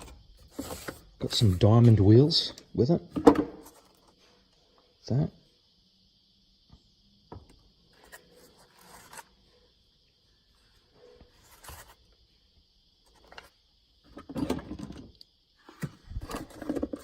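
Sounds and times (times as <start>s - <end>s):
tools scraping and rustling: 0.0s - 2.0s, 15.7s - 17.0s.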